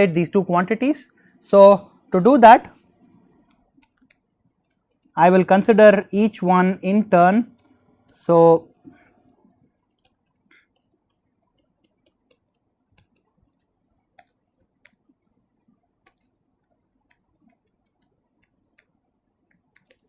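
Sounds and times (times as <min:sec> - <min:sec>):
faint sharp clicks and ticks: 0:02.7 - 0:05.3, 0:07.5 - 0:20.0.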